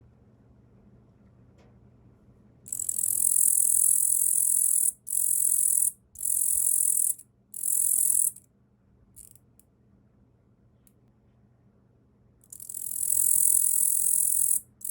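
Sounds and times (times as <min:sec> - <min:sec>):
katydid high-pitched buzzing: 0:02.7 - 0:08.4, 0:12.5 - 0:14.9.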